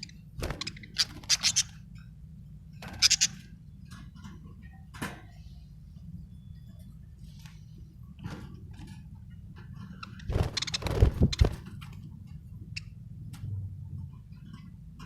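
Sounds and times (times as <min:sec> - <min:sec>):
budgerigar chirping: 0:00.0 - 0:01.8, 0:03.0 - 0:03.4.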